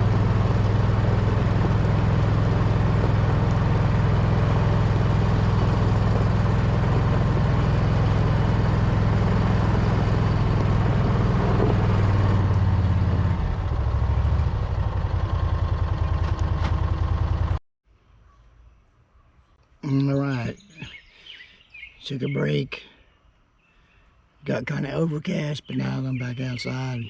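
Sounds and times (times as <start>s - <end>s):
engine idling low hum: 0.0s - 19.8s.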